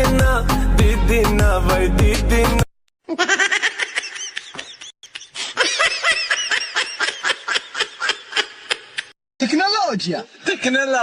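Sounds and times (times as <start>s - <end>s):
person laughing in rhythmic bursts: 3.0s - 9.2s.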